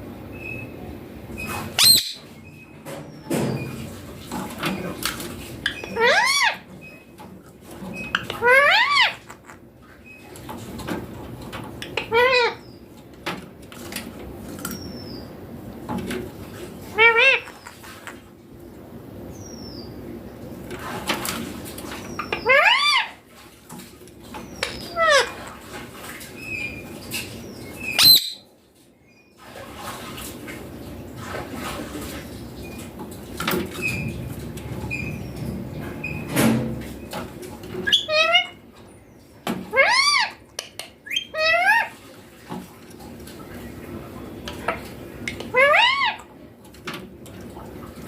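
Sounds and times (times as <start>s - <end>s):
parakeet call: 1.8s - 2.2s, 5.7s - 6.7s, 8.4s - 9.4s, 17.0s - 17.8s, 27.9s - 28.4s, 45.5s - 46.2s
parakeet calling: 1.8s - 2.7s, 5.6s - 7.0s, 7.9s - 10.2s, 11.8s - 12.8s, 16.9s - 17.8s, 22.2s - 23.2s, 24.4s - 25.4s, 27.5s - 28.4s, 37.8s - 38.6s, 39.7s - 40.4s, 41.0s - 41.9s, 45.5s - 46.3s.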